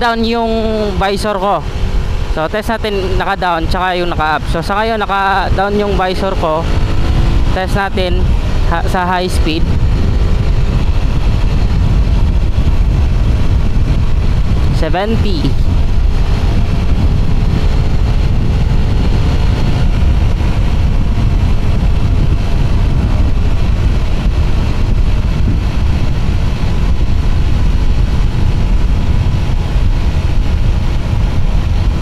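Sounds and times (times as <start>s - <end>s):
motorcycle engine running: 0.0s - 32.0s
wind rumble on microphone: 0.0s - 32.0s.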